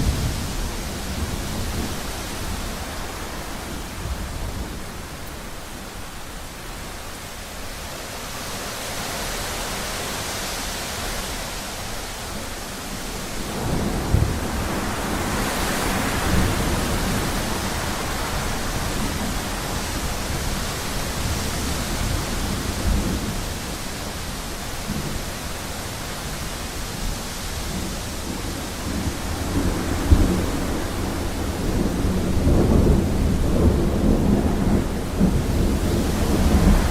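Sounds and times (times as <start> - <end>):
rain hissing: 0.0 - 36.9
thunder rumbling: 13.2 - 25.3, 27.5 - 36.9.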